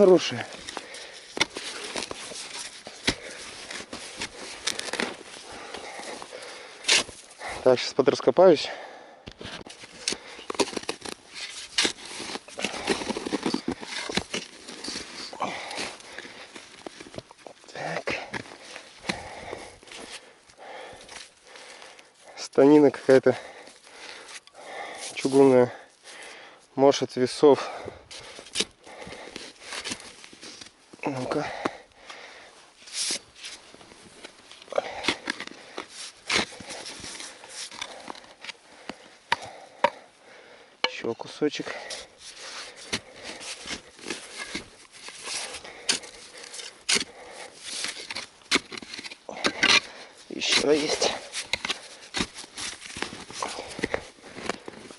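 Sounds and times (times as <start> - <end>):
shovel digging into snowy soil: 6.8 - 7.3, 9.7 - 16.0, 34.8 - 38.6, 41.7 - 54.9.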